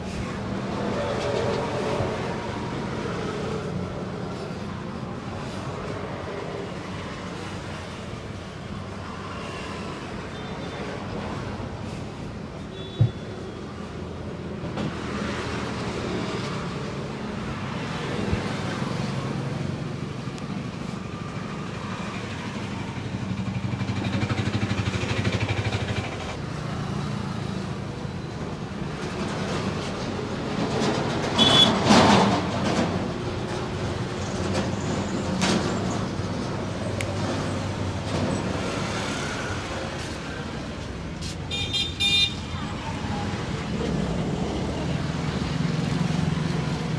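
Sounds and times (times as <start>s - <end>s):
vehicles passing by: 0.0s - 12.7s, 13.3s - 46.9s.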